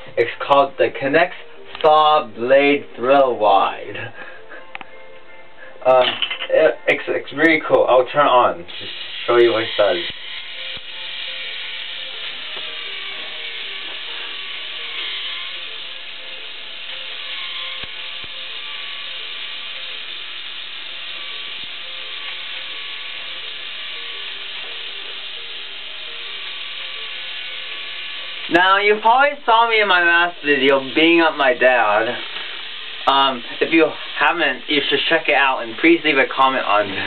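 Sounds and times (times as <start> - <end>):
electric motor driving plastic gears: 8.8 - 28.5.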